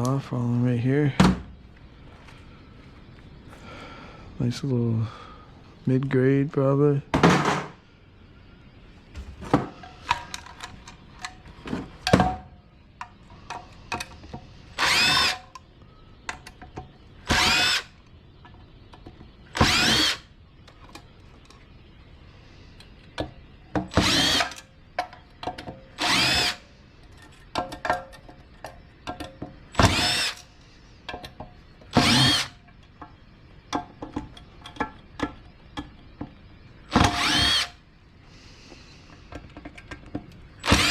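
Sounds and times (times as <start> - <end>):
parts and screws clinking: 9.8 - 12.4, 24.1 - 36.3
cordless drill whirring: 14.8 - 15.4, 17.3 - 17.9, 19.5 - 20.3, 24.0 - 24.6, 26.0 - 26.6, 29.8 - 30.5, 31.9 - 32.6, 36.9 - 37.8, 40.6 - 40.9.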